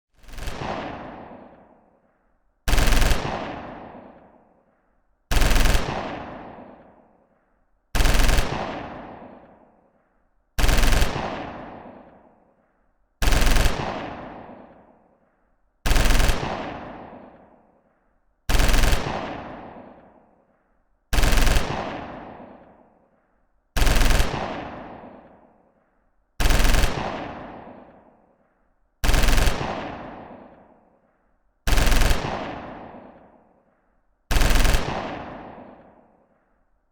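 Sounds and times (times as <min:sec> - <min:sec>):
machine-gun bursts with echo: 0:00.2 - 0:01.8, 0:02.7 - 0:04.5, 0:05.3 - 0:07.1, 0:08.0 - 0:09.6, 0:10.6 - 0:12.3, 0:13.2 - 0:14.9, 0:15.9 - 0:17.6, 0:18.5 - 0:20.1, 0:21.1 - 0:22.8, 0:23.8 - 0:25.5, 0:26.4 - 0:28.1, 0:29.0 - 0:30.8, 0:31.7 - 0:33.5, 0:34.3 - 0:36.3.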